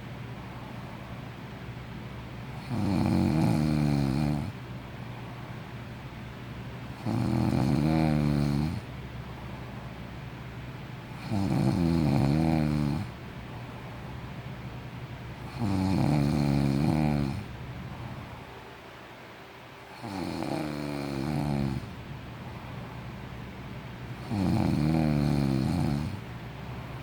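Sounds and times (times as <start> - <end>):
quiet breathing: 0.0 - 1.8, 2.4 - 6.2, 19.8 - 27.0
man snoring: 2.6 - 4.6, 7.0 - 8.9, 11.2 - 13.1, 15.4 - 17.5, 19.9 - 22.0, 24.2 - 26.2.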